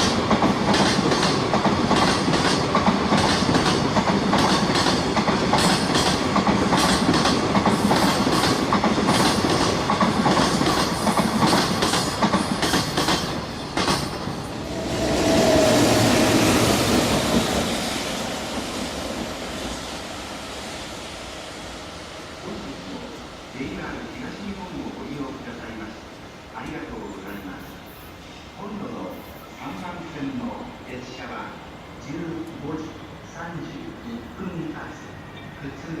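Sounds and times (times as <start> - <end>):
train wheels clattering: 0.0 - 19.8.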